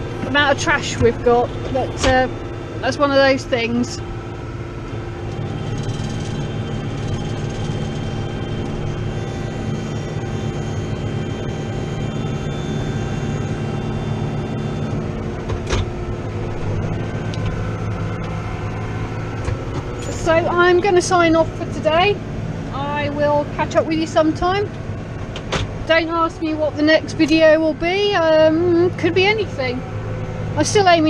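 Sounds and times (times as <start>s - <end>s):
tractor diesel engine under load: 0.0s - 31.0s.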